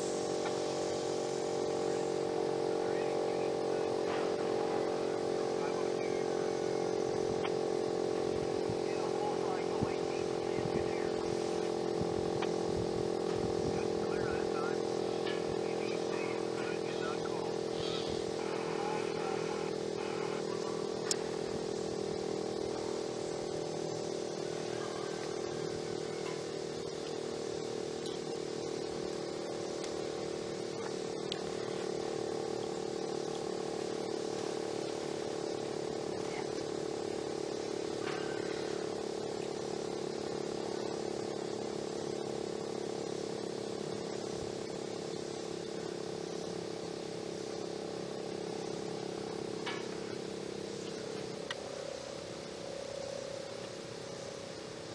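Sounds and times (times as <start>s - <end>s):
dual-tone warning siren: 8.2s - 23.0s, 24.4s - 27.8s.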